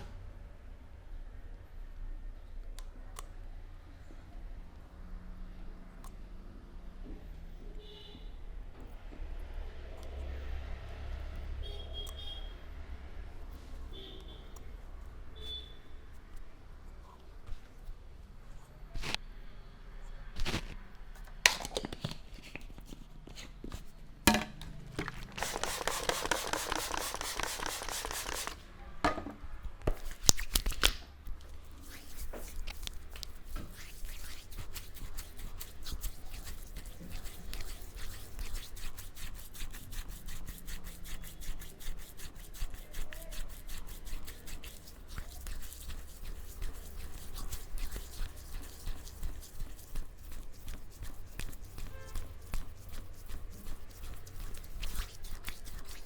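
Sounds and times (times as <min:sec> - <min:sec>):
hands slapping: 0:24.3 - 0:28.6, 0:29.9 - 0:31.1
fast rubbing: 0:25.0 - 0:28.6, 0:31.6 - 0:56.0
rhythmic tapping strokes: 0:25.2 - 0:28.6.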